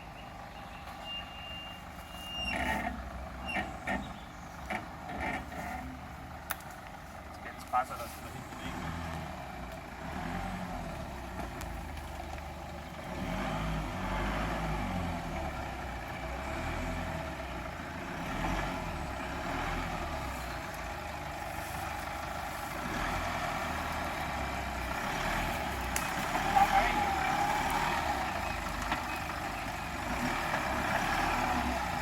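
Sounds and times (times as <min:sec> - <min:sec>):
engine running at low revs: 0:02.0 - 0:32.0.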